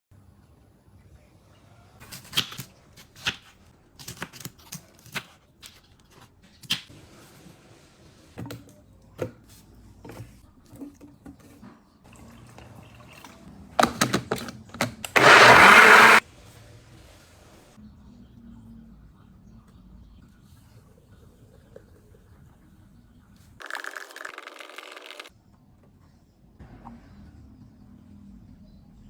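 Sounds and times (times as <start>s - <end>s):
electric blender running: 15.2s - 16.2s.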